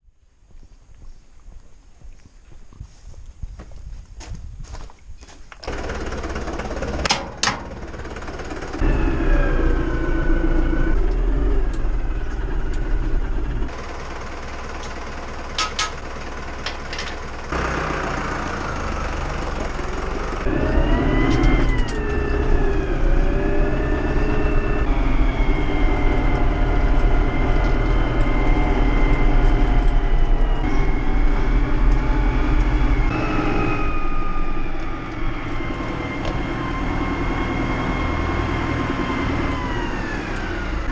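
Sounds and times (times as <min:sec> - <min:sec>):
tractor engines under load: 0:02.8 - 0:40.9
machinery whine: 0:05.6 - 0:40.9.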